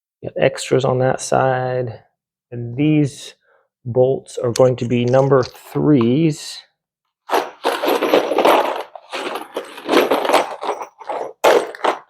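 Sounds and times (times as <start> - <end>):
bolts rustling and clattering: 7.3 - 12.0.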